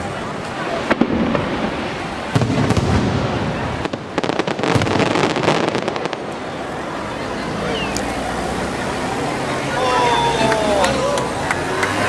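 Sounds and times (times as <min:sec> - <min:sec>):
fireworks crackling bangs: 0:00.0 - 0:07.0
fireworks low booms: 0:00.7 - 0:06.8.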